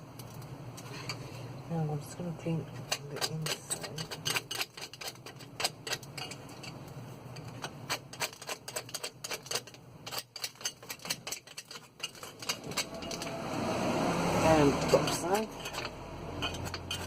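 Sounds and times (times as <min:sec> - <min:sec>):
brush scrubbing metal: 0:07.5 - 0:13.4, 0:14.2 - 0:17.0.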